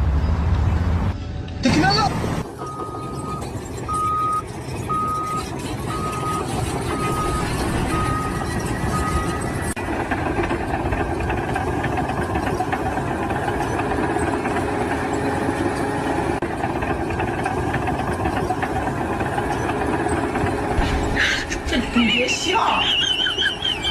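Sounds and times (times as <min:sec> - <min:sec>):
heavy vehicle engine running: 0:00.0 - 0:23.9
reversing alarm beeping: 0:02.6 - 0:09.8.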